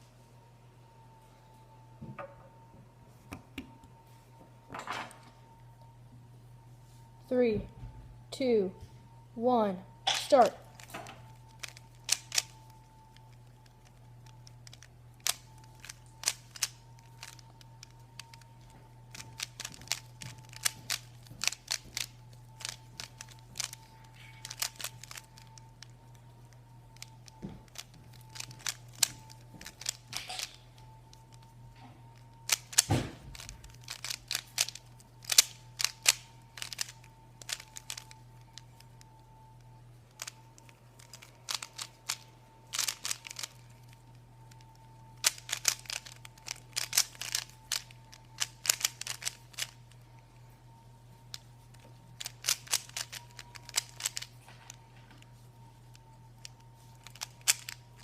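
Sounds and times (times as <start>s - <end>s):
puzzle cube layers clicking: 11.6s - 12.6s, 24.4s - 25.9s, 32.5s - 38.2s, 41.0s - 43.6s, 45.2s - 49.8s, 52.2s - 54.3s, 57.0s - 58.0s.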